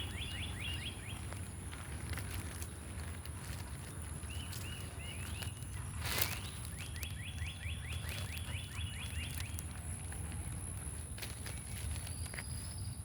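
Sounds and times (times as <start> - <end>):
bird chirps: 0.0 - 1.4, 4.2 - 10.1, 11.5 - 13.0
songbird trilling: 0.0 - 1.4, 4.2 - 10.1
low outdoor rumble: 0.0 - 13.0.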